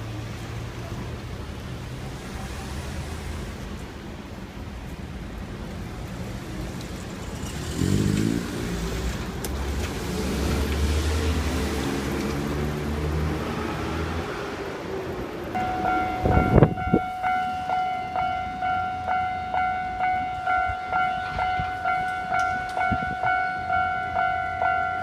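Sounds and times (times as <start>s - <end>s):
vehicle engine idling and pulling away: 0.0s - 16.6s.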